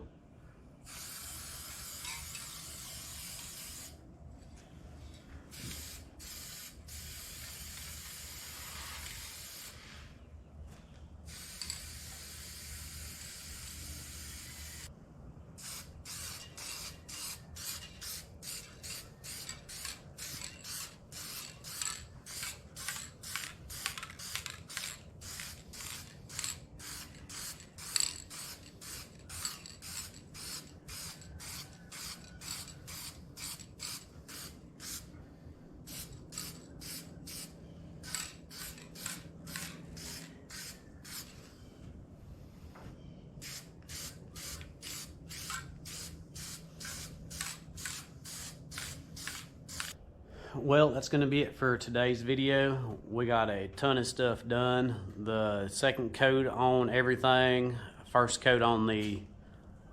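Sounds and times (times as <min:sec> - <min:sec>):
paint spraying hiss: 0:00.9 - 0:04.0, 0:05.5 - 0:10.1, 0:11.3 - 0:14.9, 0:15.6 - 0:35.1, 0:35.9 - 0:41.5, 0:43.4 - 0:50.0.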